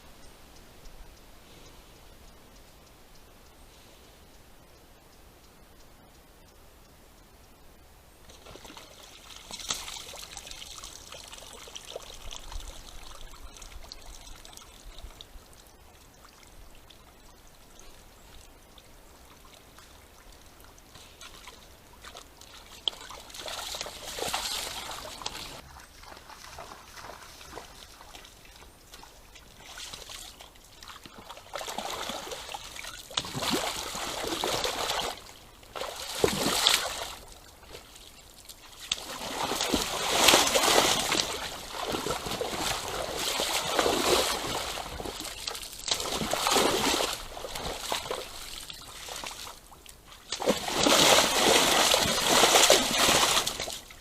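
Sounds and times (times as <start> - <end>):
deer splashing in mud: 8.3 - 14.7, 21.0 - 54.0.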